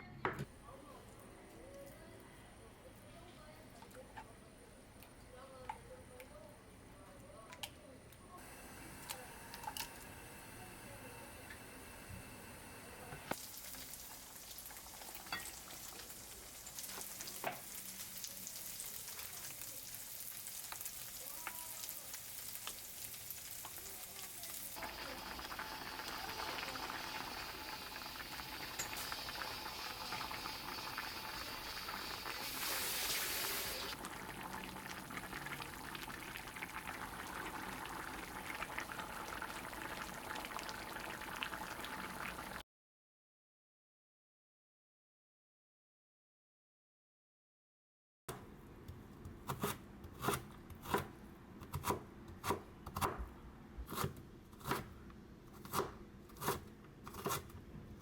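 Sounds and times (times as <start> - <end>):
food sizzling in a pan: 8.4 - 42.6.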